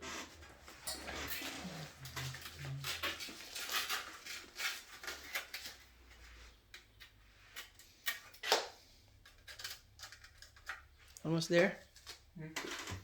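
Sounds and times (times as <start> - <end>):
small hard parts clicking: 0.9 - 11.2.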